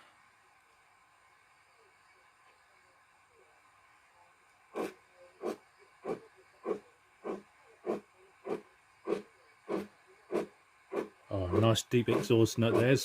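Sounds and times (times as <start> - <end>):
steam locomotive chuffs from speaker: 4.7 - 13.0.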